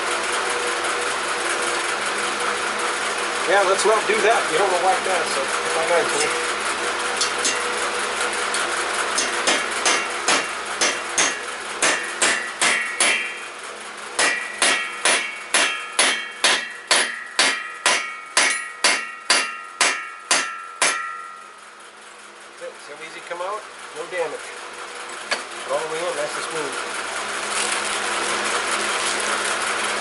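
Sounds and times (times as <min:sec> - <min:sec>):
hammer striking metal tool: 0:07.2 - 0:07.7, 0:09.1 - 0:13.5, 0:14.2 - 0:21.5.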